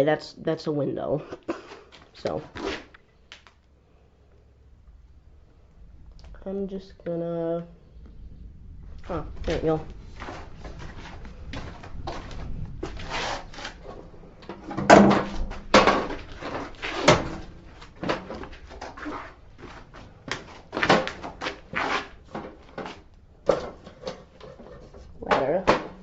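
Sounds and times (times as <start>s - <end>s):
hard objects knocking and rattling: 9.4s - 26.0s.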